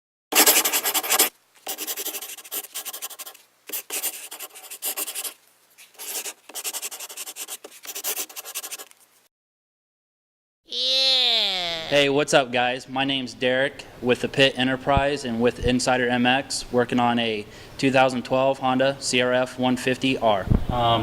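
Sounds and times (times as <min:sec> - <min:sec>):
rapid scratching noise: 0:00.3 - 0:09.1.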